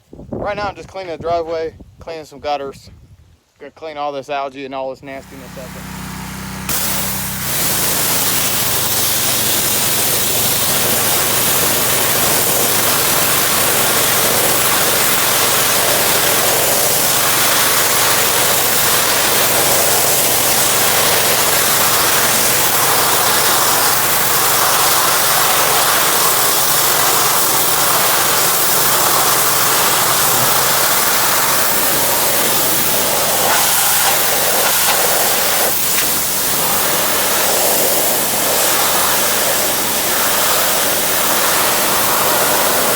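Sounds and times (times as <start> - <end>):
low engine hum: 5.2 - 13.2
pressure washer water jet hissing: 5.2 - 42.9.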